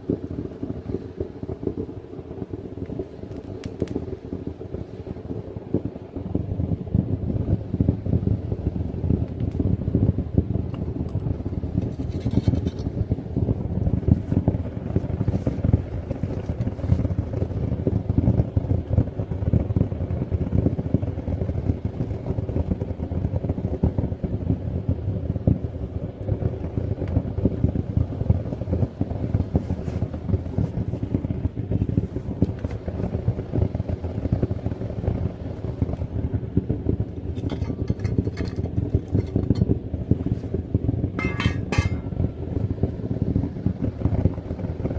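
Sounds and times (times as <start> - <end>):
furnace burner rumbling: 0.0 - 44.9.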